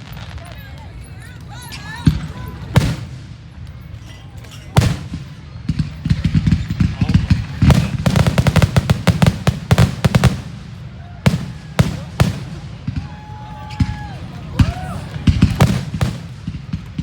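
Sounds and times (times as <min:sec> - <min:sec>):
firework shell bursts and crackle: 0:00.0 - 0:14.0, 0:14.6 - 0:17.0
firework booms: 0:02.0 - 0:03.6, 0:04.8 - 0:17.0
fireworks bang: 0:02.0 - 0:03.6, 0:04.7 - 0:17.0.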